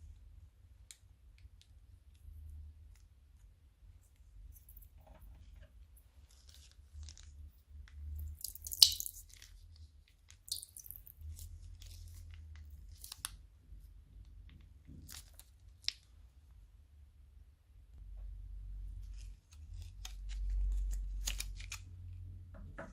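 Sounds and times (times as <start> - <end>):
crunchy slime crackling: 6.2 - 13.4.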